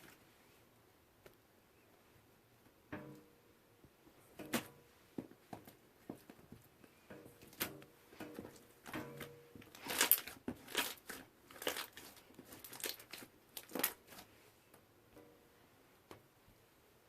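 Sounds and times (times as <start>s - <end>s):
slime crackling and popping: 9.7s - 14.2s.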